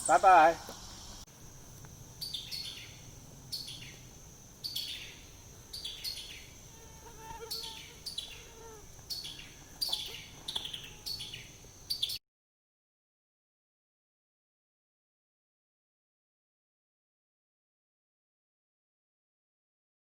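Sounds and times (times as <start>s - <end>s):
high insect drone: 0.0s - 12.2s.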